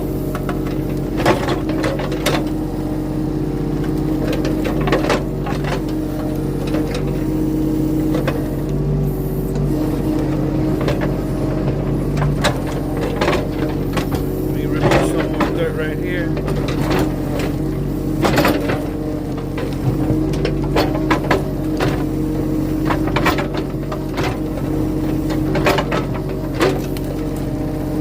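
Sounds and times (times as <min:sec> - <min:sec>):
excavator engine running: 0:00.0 - 0:28.0
excavator bucket knocks and clanks: 0:00.3 - 0:02.6, 0:10.3 - 0:15.7, 0:18.2 - 0:22.2, 0:22.8 - 0:26.9.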